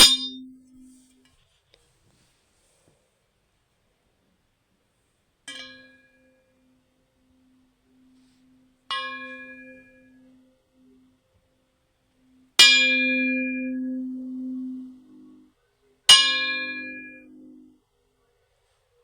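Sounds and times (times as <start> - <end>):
bell-like metal tone ringing: 0.0 - 0.8, 7.4 - 11.3, 12.1 - 17.8.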